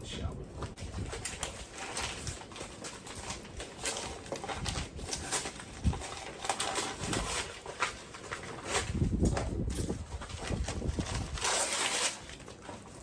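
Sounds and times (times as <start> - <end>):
packaging rustling and crinkling: 0.5 - 13.0.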